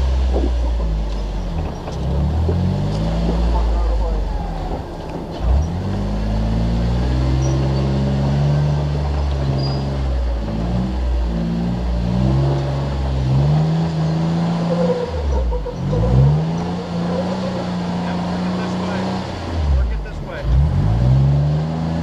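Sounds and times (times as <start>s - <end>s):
engine revving under load: 0.0s - 22.0s.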